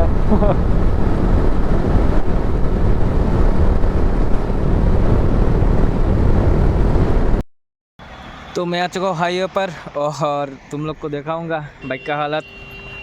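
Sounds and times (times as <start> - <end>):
road noise: 0.0 - 7.4, 8.0 - 13.0
wind buffeting microphone: 0.0 - 7.4.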